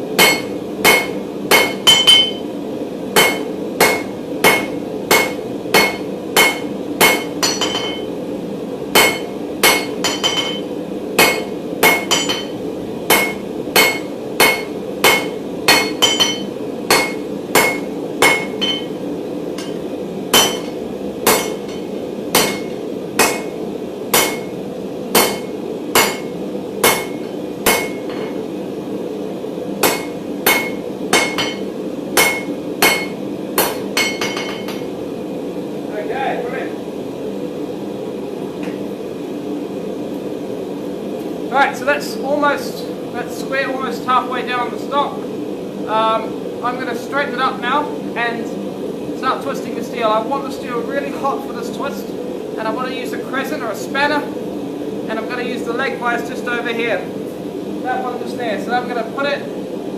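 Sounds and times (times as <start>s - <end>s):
steady low hum: 0.0s - 59.9s
hammer blows on hot steel: 0.2s - 2.5s, 3.2s - 8.1s, 9.0s - 19.0s, 19.6s - 28.4s, 29.8s - 34.9s.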